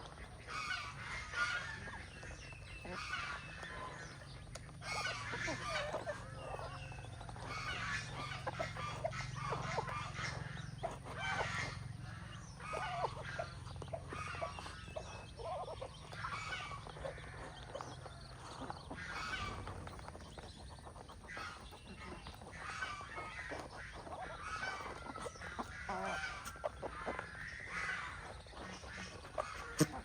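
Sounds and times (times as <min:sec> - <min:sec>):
chicks chirping: 0:00.0 - 0:30.0
hen clucking: 0:00.0 - 0:30.0.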